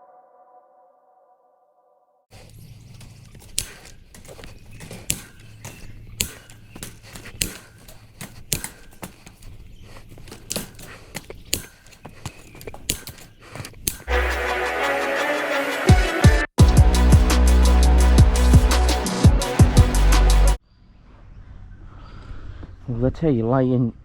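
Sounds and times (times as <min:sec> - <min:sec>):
steel mesh clanking: 0:02.3 - 0:14.6.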